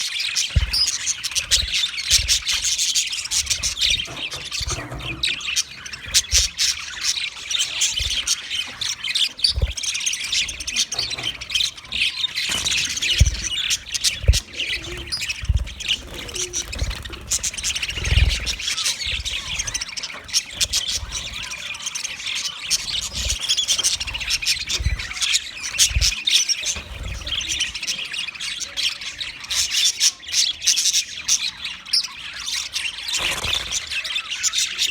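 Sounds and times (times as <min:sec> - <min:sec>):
budgie chirping and chattering: 0:00.0 - 0:28.0
soft low thuds: 0:00.6 - 0:02.6, 0:12.5 - 0:19.8.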